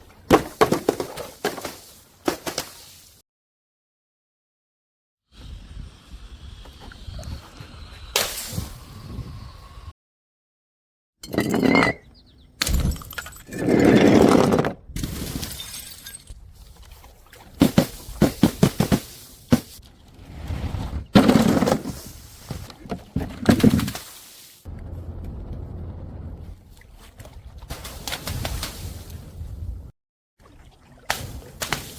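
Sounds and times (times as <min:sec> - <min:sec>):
glass bottles shattering on stairs: 0:12.7 - 0:13.5, 0:15.2 - 0:16.4.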